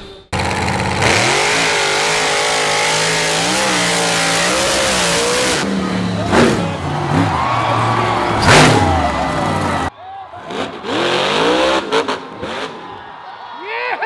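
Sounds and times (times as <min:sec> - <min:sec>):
engine sweeping in pitch: 0:00.4 - 0:09.9
large engine revving: 0:00.4 - 0:09.9, 0:10.5 - 0:12.8.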